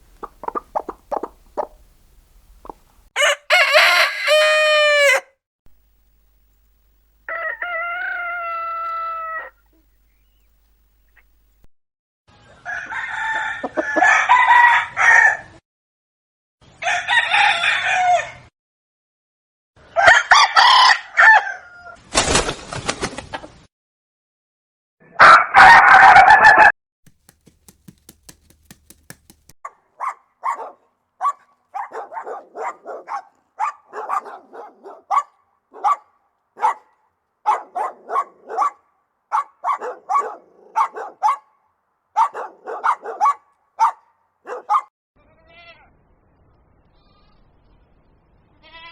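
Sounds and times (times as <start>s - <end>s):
chickens clucking: 0.0s - 3.1s, 27.3s - 29.5s
rooster crowing: 3.2s - 5.3s, 7.3s - 9.6s, 12.6s - 15.4s, 16.8s - 18.4s.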